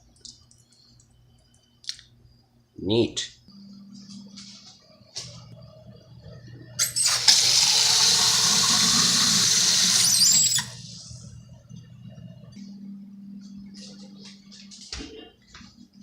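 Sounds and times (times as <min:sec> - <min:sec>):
low steady hum: 0:00.0 - 0:16.0
tap water running into a pot: 0:06.9 - 0:10.7.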